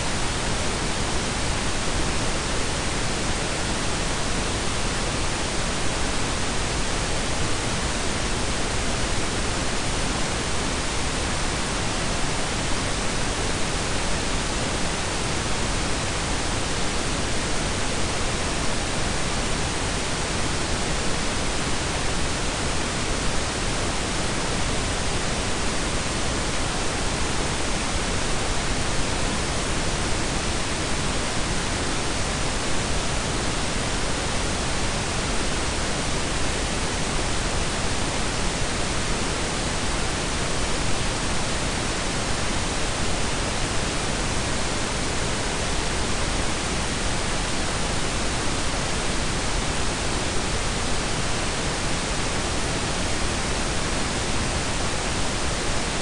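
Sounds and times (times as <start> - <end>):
steady hiss: 0.0 - 56.0.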